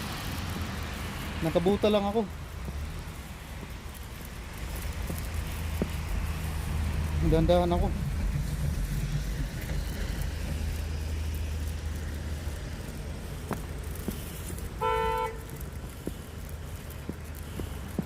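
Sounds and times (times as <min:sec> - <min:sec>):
road traffic rumble: 0:00.0 - 0:18.0
short car horn toot: 0:14.8 - 0:15.4.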